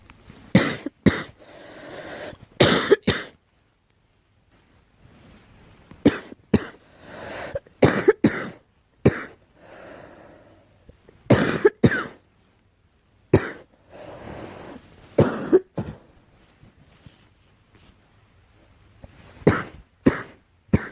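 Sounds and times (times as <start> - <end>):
girl coughing: 0.6 - 1.4, 2.6 - 3.3, 6.0 - 6.8, 7.5 - 9.4, 11.3 - 12.2, 13.4 - 13.7, 15.2 - 16.1, 19.4 - 20.9.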